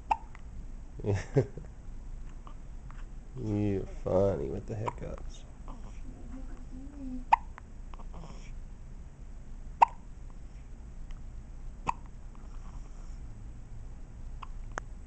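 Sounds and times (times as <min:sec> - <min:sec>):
baby hiccupping: 0:00.0 - 0:00.4, 0:07.2 - 0:08.5, 0:09.8 - 0:10.1, 0:11.9 - 0:12.1.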